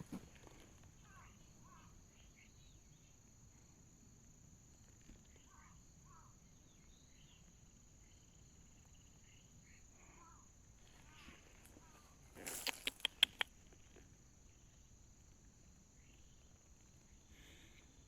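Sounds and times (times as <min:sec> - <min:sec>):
kitten mewing: 0:12.4 - 0:13.4.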